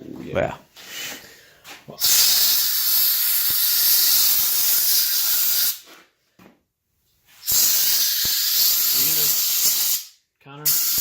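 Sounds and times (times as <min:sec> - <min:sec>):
hiss of escaping air: 0:02.0 - 0:05.9, 0:07.4 - 0:11.0.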